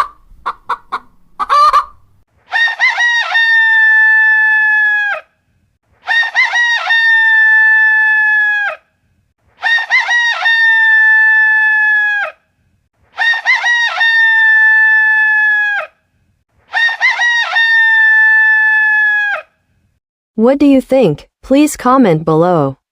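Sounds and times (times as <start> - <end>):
rooster crowing: 2.5 - 5.4, 6.1 - 8.9, 9.6 - 12.4, 13.2 - 16.0, 16.7 - 19.6.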